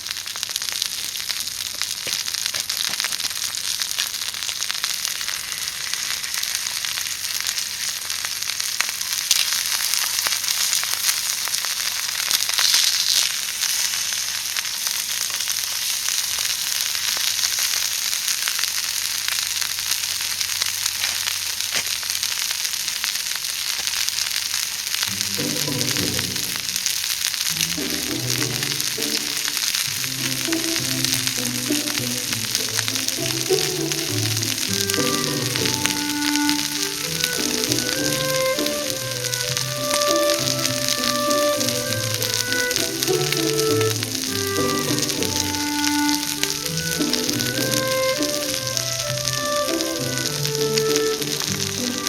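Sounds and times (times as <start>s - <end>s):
food sizzling over fire: 0.0s - 52.0s
background music: 25.1s - 26.8s, 27.5s - 52.0s.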